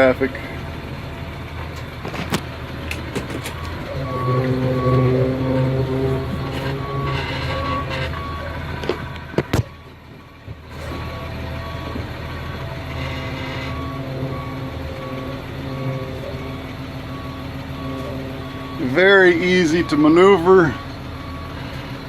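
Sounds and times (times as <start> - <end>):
diesel bus engine running: 0.0 - 22.0
short high beep: 3.9 - 8.4.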